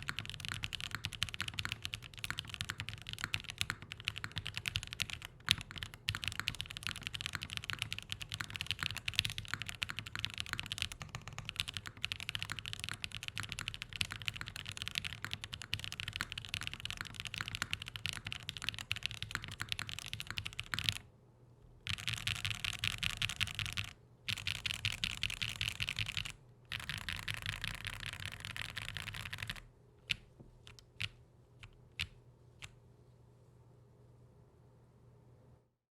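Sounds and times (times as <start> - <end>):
mechanical keyboard typing: 0.0 - 21.0, 21.8 - 32.7.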